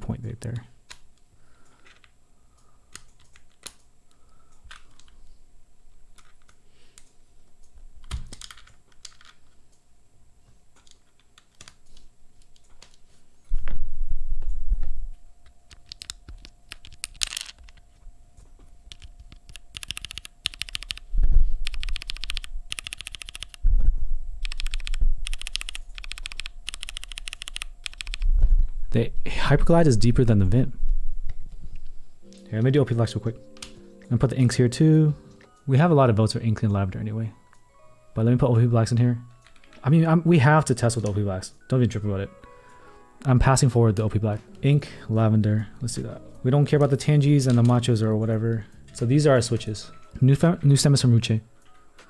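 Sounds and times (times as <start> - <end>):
mechanical keyboard typing: 8.1 - 9.3, 15.7 - 17.8, 18.9 - 23.6, 24.4 - 28.2.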